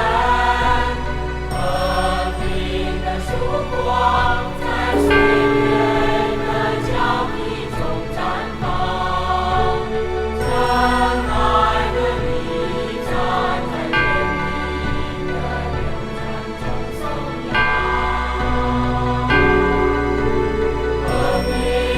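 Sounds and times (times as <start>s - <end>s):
choir-like singing: 1.8s - 9.8s.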